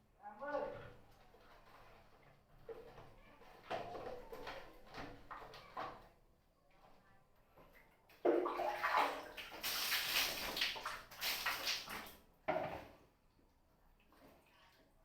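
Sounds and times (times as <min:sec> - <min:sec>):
water pouring in a bath: 0:00.8 - 0:06.0, 0:07.6 - 0:12.8.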